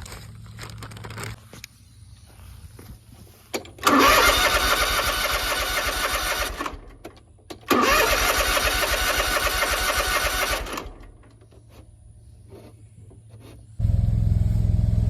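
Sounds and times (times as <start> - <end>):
mower engine cranking: 3.5 - 11.8.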